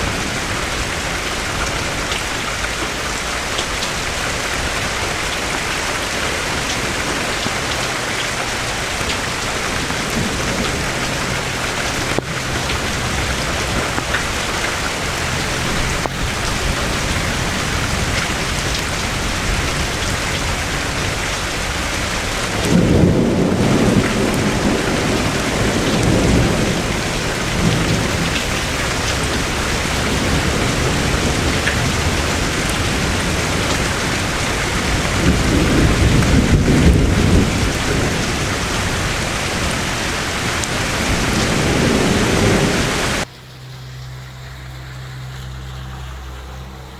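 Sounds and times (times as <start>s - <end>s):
steady rain falling: 0.0s - 46.9s
thunder rumbling: 8.4s - 39.2s.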